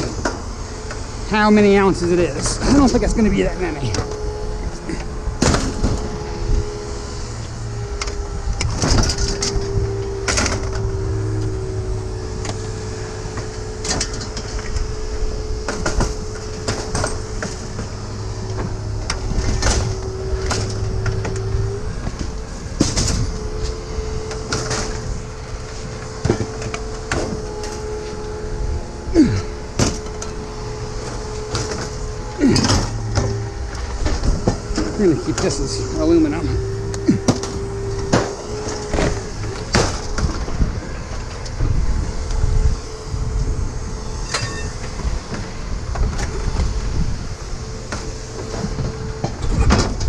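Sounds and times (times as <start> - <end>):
steady low hum: 0.0 - 50.0
hand tools clanking on metal: 29.2 - 40.4.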